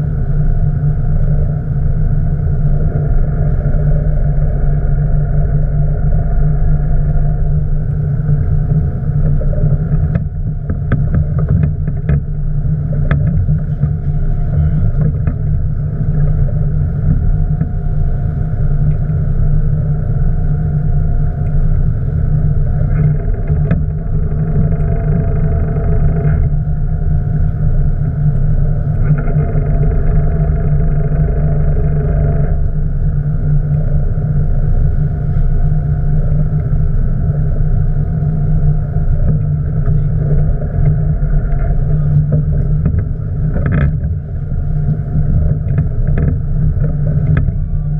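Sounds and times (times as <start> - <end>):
boat engine droning: 0.0 - 47.9.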